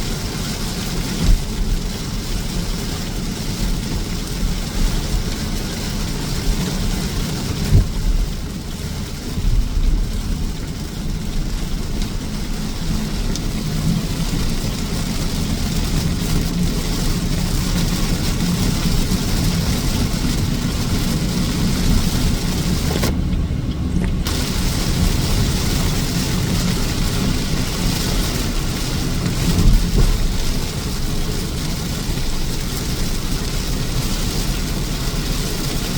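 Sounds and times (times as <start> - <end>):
car engine and road rumble: 0.0 - 35.9.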